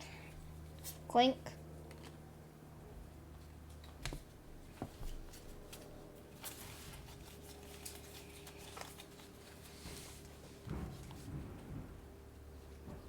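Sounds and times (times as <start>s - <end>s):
foil pack rustling and crinkling: 5.1s - 10.7s.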